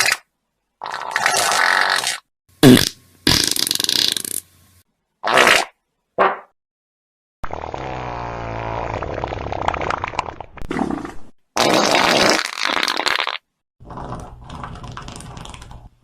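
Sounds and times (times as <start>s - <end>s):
fart sound effects: 0.8s - 4.4s, 5.2s - 5.8s, 7.4s - 14.1s.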